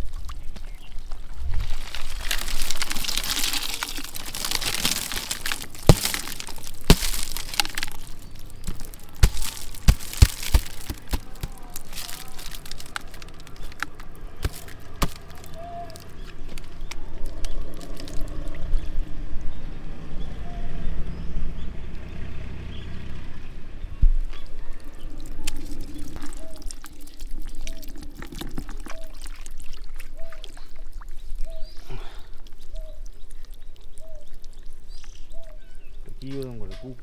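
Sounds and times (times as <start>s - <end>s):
water pouring and splashing: 0.0s - 18.8s, 24.3s - 33.2s
sharp knocks and cracks: 1.8s - 18.2s.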